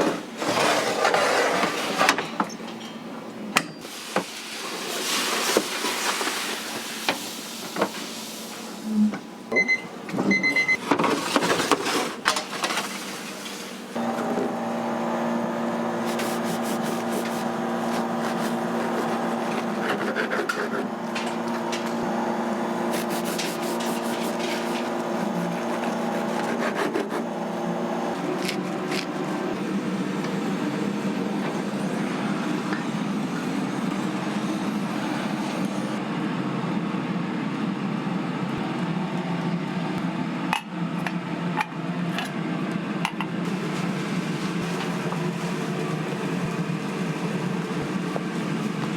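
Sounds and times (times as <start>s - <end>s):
steady hum: 14.0s - 29.6s
scraping and rubbing: 16.0s - 22.0s, 22.9s - 27.3s.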